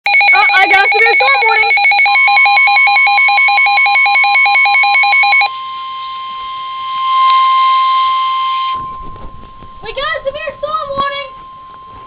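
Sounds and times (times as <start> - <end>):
phone rapid pulsing beeps: 0.1 - 5.5
steady alert tone: 0.1 - 5.5.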